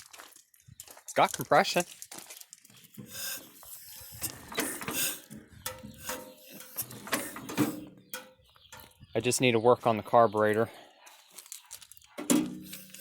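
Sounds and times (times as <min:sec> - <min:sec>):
engine turned over by hand: 0:03.0 - 0:07.9.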